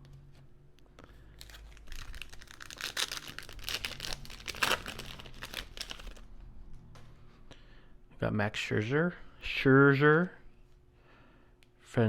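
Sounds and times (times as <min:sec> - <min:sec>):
wrapper crinkling as torn open: 0:01.4 - 0:06.3.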